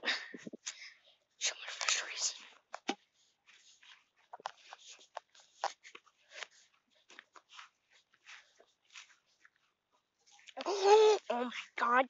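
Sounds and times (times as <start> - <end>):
soft rustling and swishing: 0.2 - 12.0.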